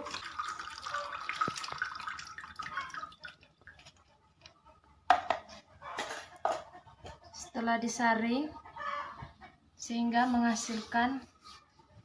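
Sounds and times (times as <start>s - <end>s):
liquid sloshing in a glass: 0.0s - 4.5s.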